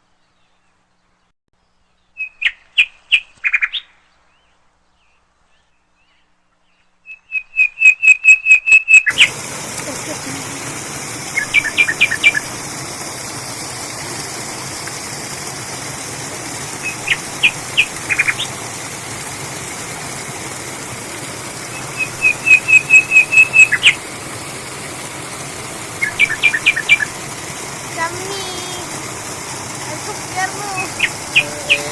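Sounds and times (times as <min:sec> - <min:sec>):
bird whistling sharp notes: 0:07.1 - 0:09.3, 0:21.7 - 0:24.0, 0:26.0 - 0:27.1.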